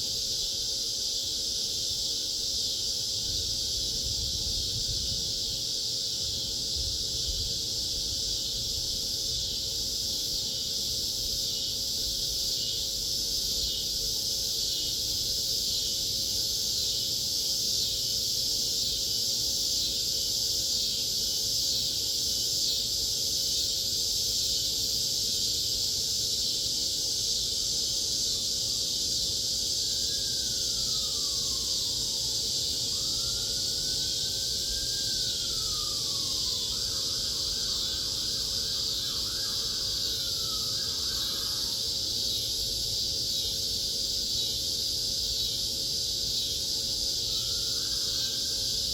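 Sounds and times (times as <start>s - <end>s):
cicadas buzzing: 0.0s - 48.9s
faint siren: 29.7s - 42.1s, 47.1s - 48.9s.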